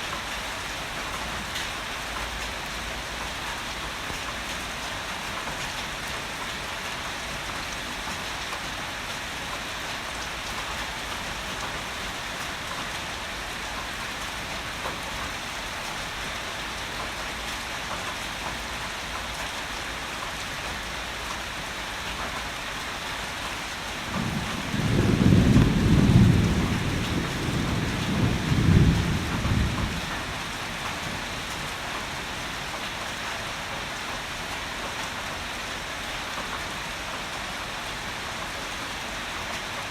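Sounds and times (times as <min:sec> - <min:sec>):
heavy rain falling: 0:00.0 - 0:39.9
low rumble of thunder: 0:24.0 - 0:31.8.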